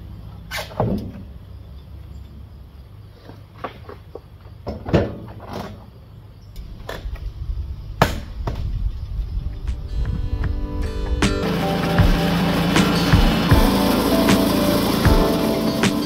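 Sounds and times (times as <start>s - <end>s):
steady low rumble: 6.7s - 16.0s
music: 9.6s - 16.0s.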